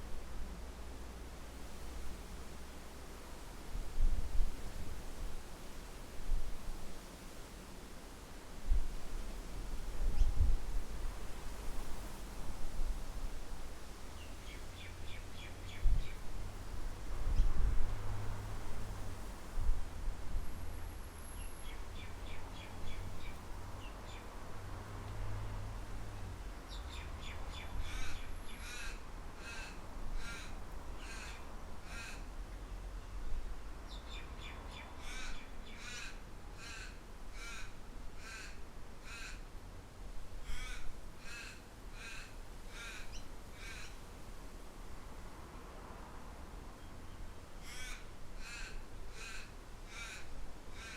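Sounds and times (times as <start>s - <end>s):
low wind rumble: 8.6s - 34.2s.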